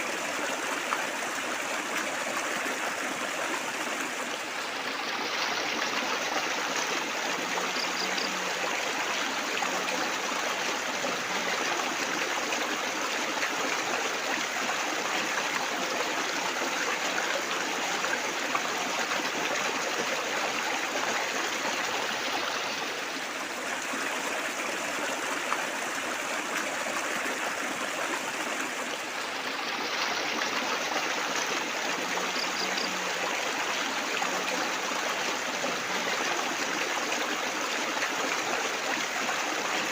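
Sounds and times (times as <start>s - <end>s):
water trickling and splashing: 0.0s - 39.9s.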